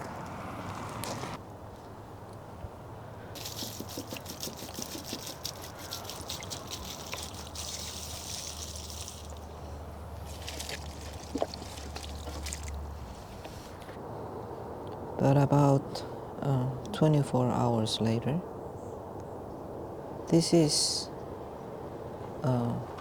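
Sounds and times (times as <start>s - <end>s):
water splattering onto plants: 3.4s - 9.5s, 10.2s - 13.0s.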